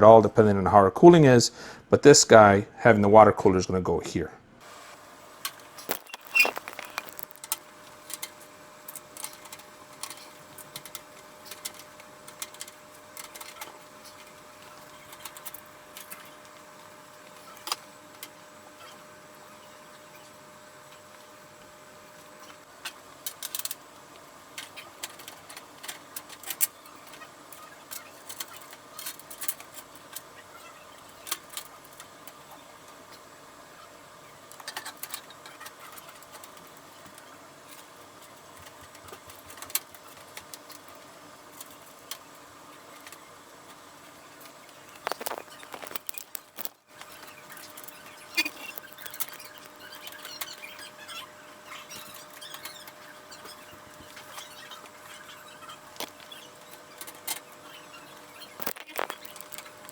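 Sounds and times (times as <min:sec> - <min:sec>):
faint steady hum: 0:00.0 - 0:59.9
computer parts clicking and tapping: 0:05.4 - 0:16.4, 0:24.6 - 0:33.0, 0:34.5 - 0:59.9.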